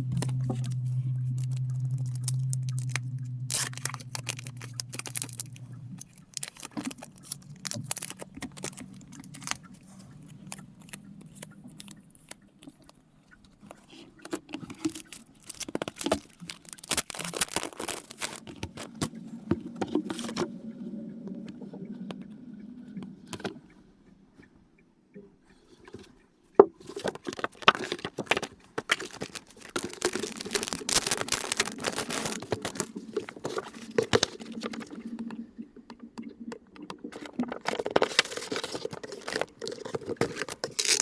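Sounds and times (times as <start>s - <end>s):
plastic packaging crinkling: 0.0s - 12.9s, 14.3s - 19.2s, 26.9s - 35.3s, 37.1s - 41.0s
steady low hum: 0.0s - 14.2s, 18.5s - 26.6s.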